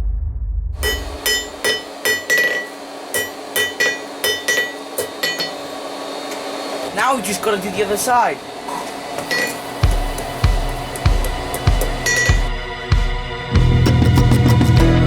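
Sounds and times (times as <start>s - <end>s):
hammer striking steel on anvil: 0.8s - 6.5s, 8.7s - 12.5s.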